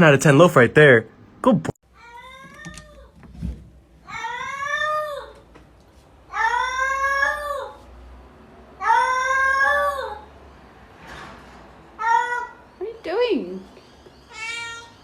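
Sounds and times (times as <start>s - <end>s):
cat meowing: 2.0s - 3.2s, 4.0s - 5.4s.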